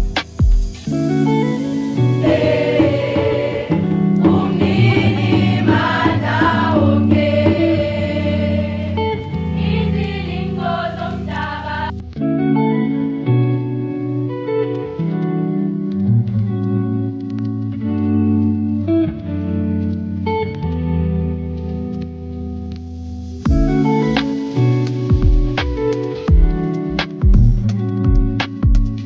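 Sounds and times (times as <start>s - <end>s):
gospel choir singing: 1.3s - 12.0s.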